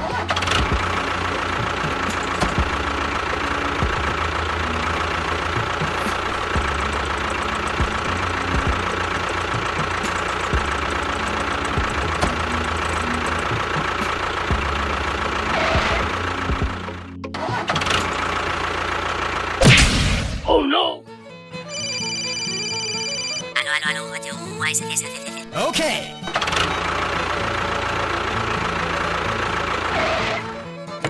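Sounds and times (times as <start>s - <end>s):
machine engine rumble: 0.0s - 20.5s, 25.2s - 31.0s
high whine: 0.0s - 20.7s.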